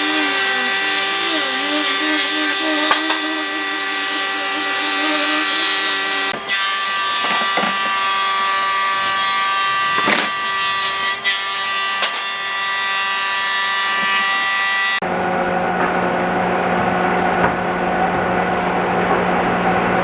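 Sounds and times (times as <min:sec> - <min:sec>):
low motor hum: 0:00.0 - 0:06.4
power tool whining on wood: 0:00.0 - 0:15.0.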